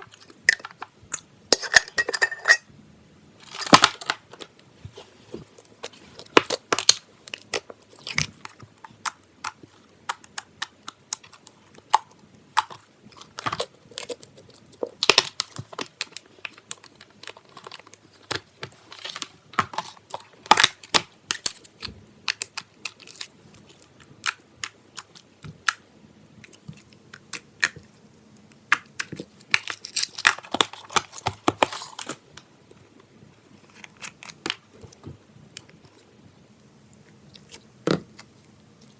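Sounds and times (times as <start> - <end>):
slime clicking and crackling: 5.7 - 25.8.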